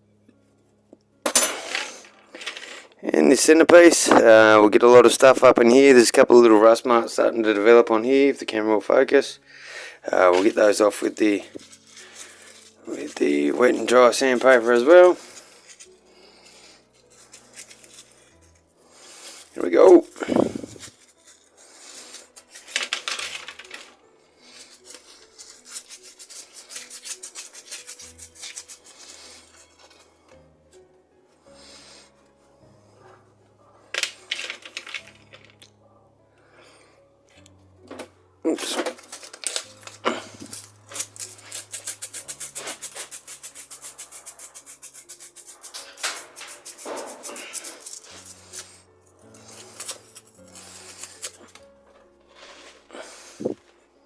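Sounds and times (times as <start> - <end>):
sandpaper rubbing on steel: 10.2 - 22.8, 24.5 - 30.1, 40.4 - 51.6.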